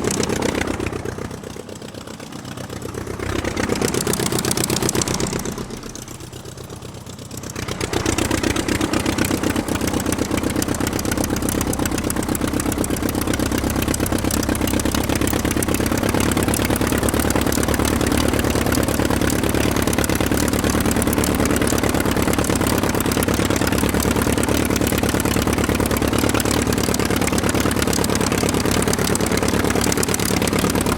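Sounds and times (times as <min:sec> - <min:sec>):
aircraft piston engine running: 0:00.0 - 0:30.9.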